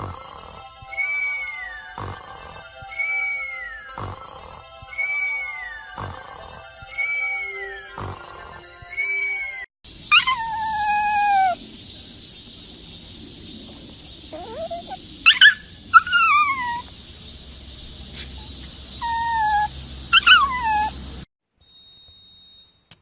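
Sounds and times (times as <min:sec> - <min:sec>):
small animal high calls: 0:05.0 - 0:21.2.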